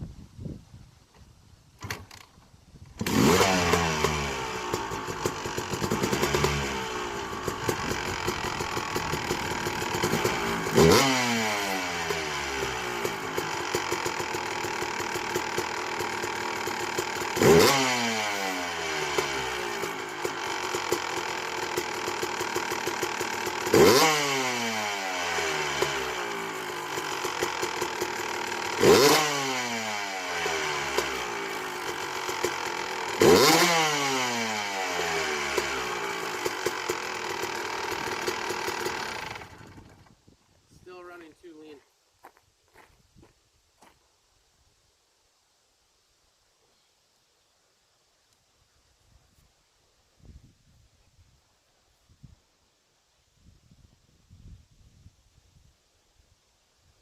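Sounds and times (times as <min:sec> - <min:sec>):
dirt bike engine idling: 0:02.9 - 0:41.7
engine throttle blips: 0:03.0 - 0:40.1.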